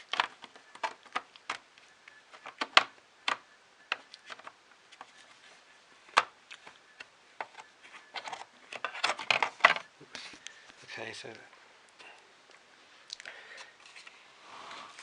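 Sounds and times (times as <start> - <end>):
hard plastic parts clicking: 0.0 - 5.2, 6.0 - 9.9.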